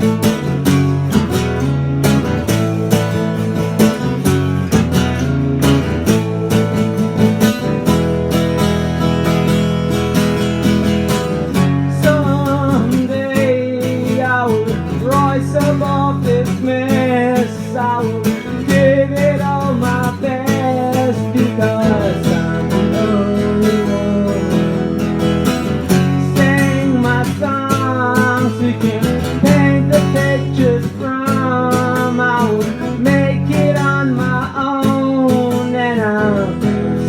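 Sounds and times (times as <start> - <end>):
acoustic guitar strumming: 0.0 - 37.0
person singing: 11.5 - 25.2, 25.9 - 37.0.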